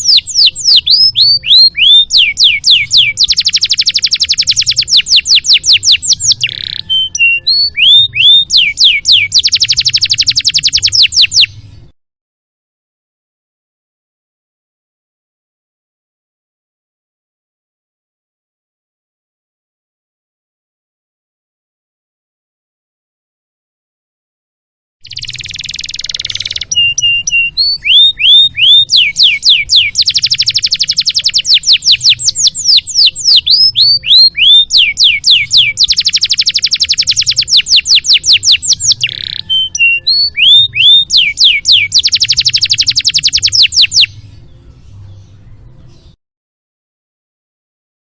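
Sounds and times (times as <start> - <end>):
canary singing: 0.0 - 11.9, 25.0 - 46.2.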